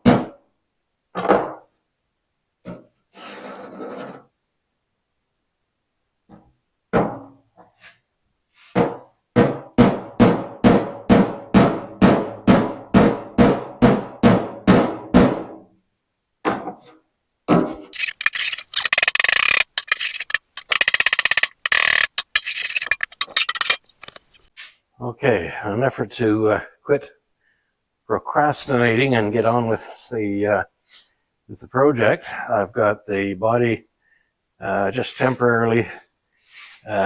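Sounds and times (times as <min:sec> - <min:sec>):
scraping rasping noise: 0:18.0 - 0:24.5.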